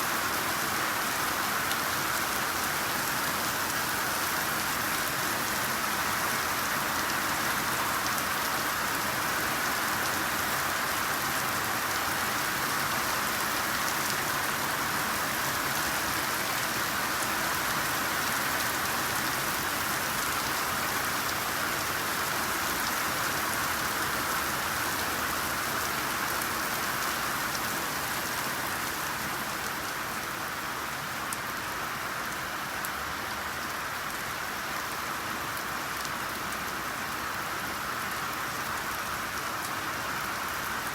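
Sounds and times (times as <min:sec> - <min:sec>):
steady rainfall: 0:00.0 - 0:40.9.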